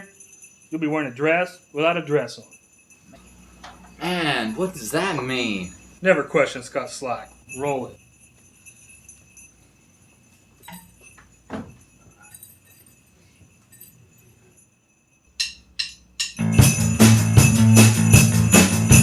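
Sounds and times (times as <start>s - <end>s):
sleigh bells jingling: 0.0s - 19.0s
band music with strong bass: 16.4s - 19.0s.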